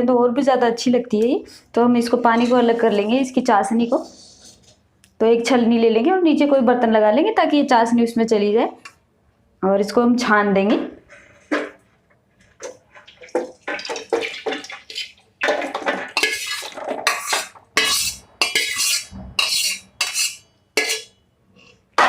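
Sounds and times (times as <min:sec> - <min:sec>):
kitchen utensils clattering: 0:12.6 - 0:21.1.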